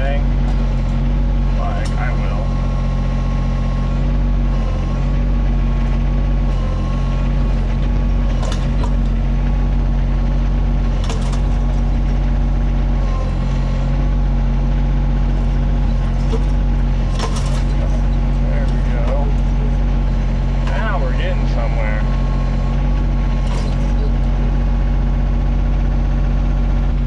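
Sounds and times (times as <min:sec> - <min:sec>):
excavator diesel engine running: 0:00.0 - 0:27.0.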